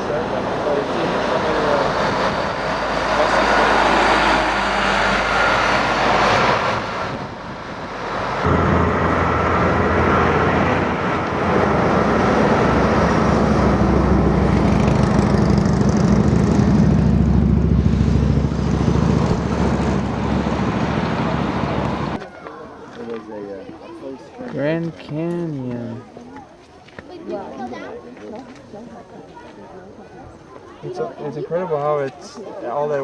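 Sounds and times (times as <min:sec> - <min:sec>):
vehicle engine humming: 0:00.0 - 0:22.2
road noise: 0:00.0 - 0:33.0.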